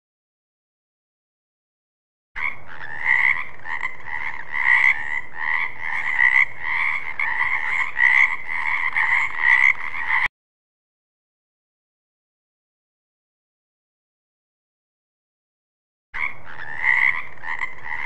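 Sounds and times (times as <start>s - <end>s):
frogs croaking: 2.4s - 10.3s, 16.2s - 18.0s.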